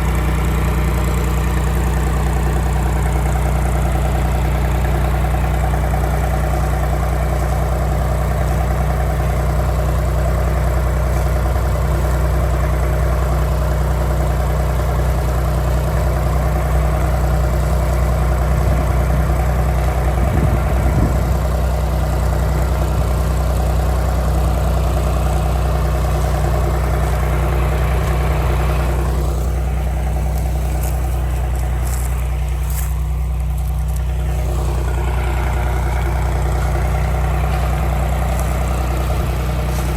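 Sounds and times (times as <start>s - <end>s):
engine running steadily: 0.0s - 39.9s.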